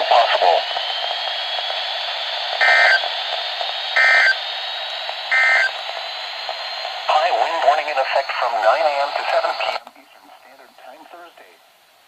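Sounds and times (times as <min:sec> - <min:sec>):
radio static: 0:00.0 - 0:00.7, 0:01.7 - 0:11.6
digital data tone bursts: 0:02.6 - 0:03.1, 0:03.9 - 0:04.4, 0:05.3 - 0:05.9.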